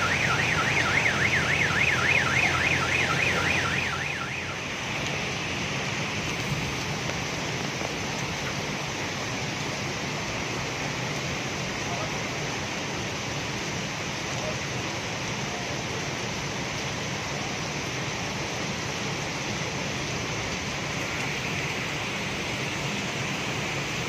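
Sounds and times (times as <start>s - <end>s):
electronic alarm warbling: 0.0s - 4.6s
steady rushing background noise: 0.0s - 24.0s.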